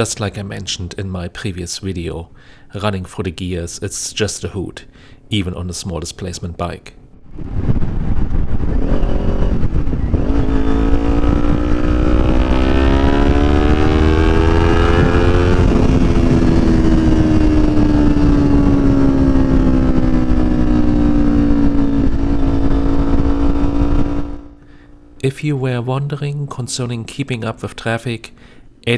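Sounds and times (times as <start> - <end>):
motorcycle engine revving: 7.3 - 25.2.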